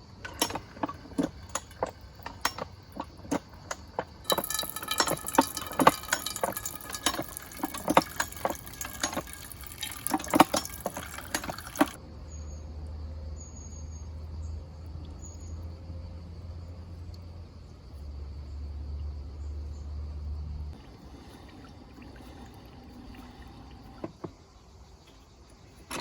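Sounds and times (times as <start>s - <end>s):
irregular clicks and knocks: 0.0s - 12.0s.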